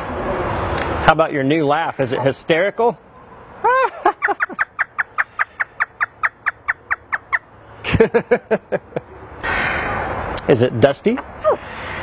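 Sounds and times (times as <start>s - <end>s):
parrot imitating a laugh: 3.6s - 5.0s.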